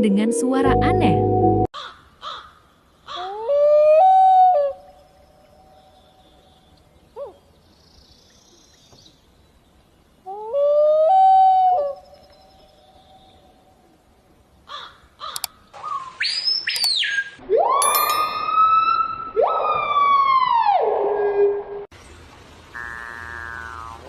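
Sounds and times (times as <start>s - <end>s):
bird clicks and whistles: 15.3s - 18.2s.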